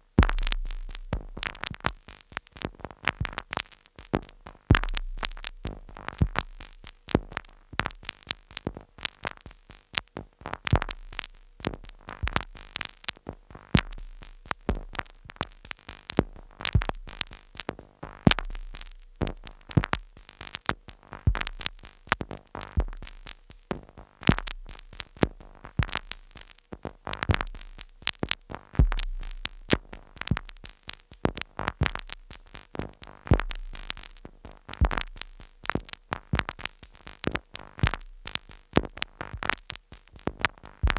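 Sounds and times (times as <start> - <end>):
deep bass pulse: 0.2 - 1.6, 28.8 - 29.3.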